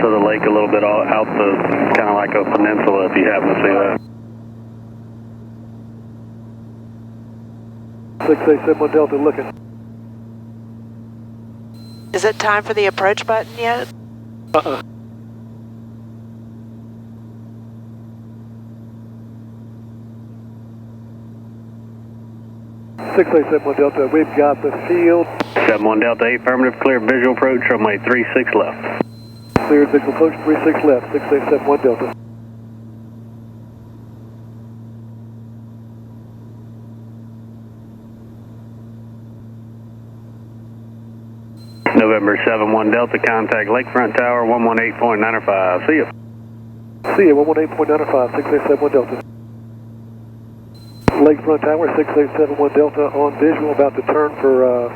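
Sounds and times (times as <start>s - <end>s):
aircraft propeller engines droning: 0.0s - 4.0s, 8.2s - 9.5s, 11.8s - 13.9s, 23.0s - 32.2s, 41.7s - 46.1s, 47.0s - 49.2s, 50.8s - 54.9s.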